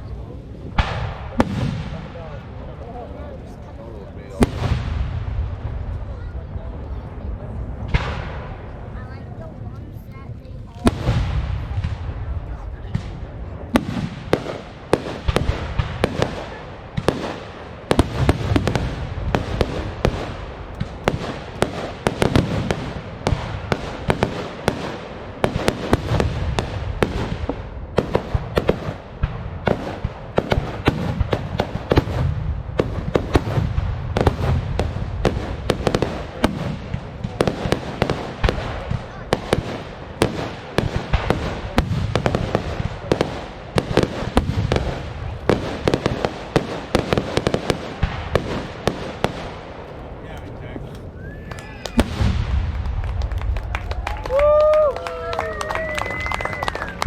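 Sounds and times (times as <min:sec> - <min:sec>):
fireworks bangs: 0:00.0 - 0:57.0
low booming rumble: 0:04.1 - 0:16.2.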